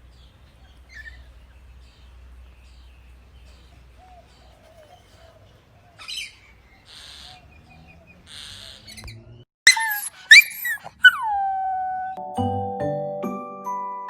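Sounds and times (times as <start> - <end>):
puppy yelping and howling: 9.7 - 12.2.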